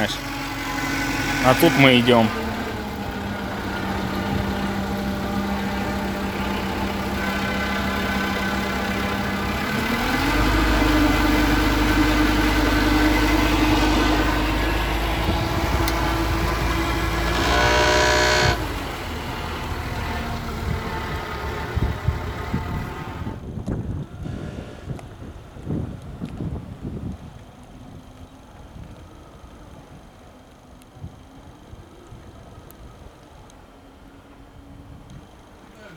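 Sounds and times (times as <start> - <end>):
horn: 0.0 - 19.4
boat engine running: 0.0 - 23.5.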